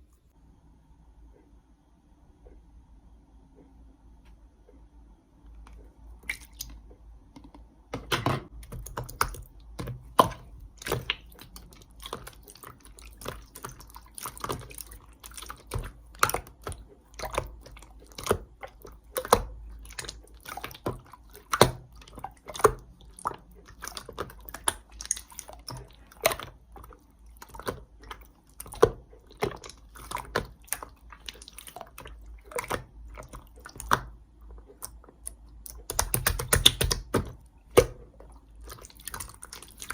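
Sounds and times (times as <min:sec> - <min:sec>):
slime squeezed wet pops: 0:35.7 - 0:38.0.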